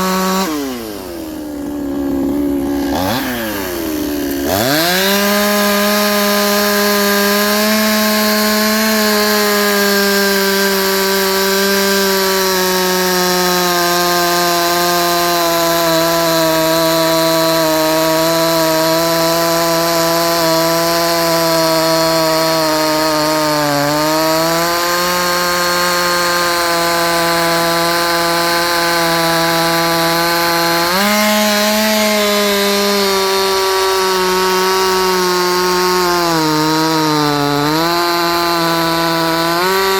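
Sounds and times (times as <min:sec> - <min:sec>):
chainsaw cutting log at full throttle: 0:00.0 - 0:39.9.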